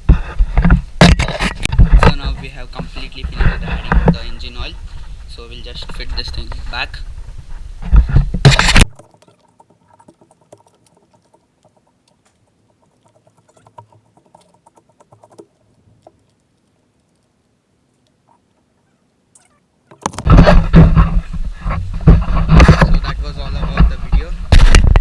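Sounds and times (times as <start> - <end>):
small clicks and rattles: 8.5 - 18.6.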